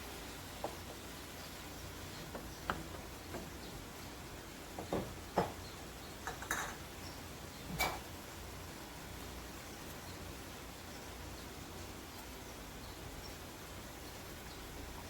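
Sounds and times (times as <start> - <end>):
utensil knocking against pan: 4.8 - 6.8.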